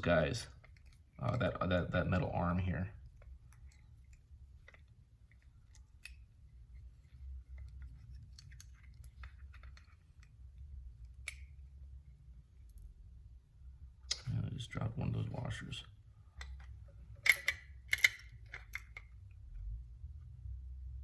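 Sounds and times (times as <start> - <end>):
low steady rumble: 0.0 - 21.0
small metal parts clicking: 16.4 - 19.3.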